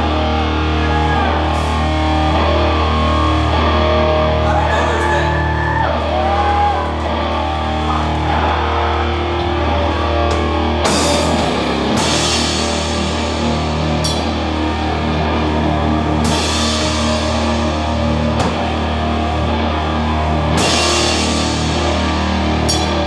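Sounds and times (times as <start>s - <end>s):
lead guitar bending notes: 0.0s - 23.0s
low distorted guitar and bass drone: 0.0s - 23.0s
cymbal crashes: 10.2s - 23.0s.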